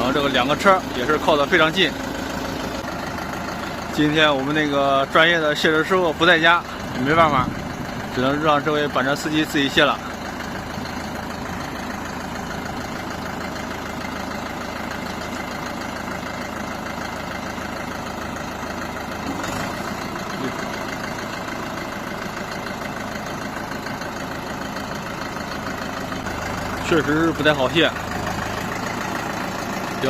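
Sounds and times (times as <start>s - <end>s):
tractor diesel engine running: 0.0s - 30.0s.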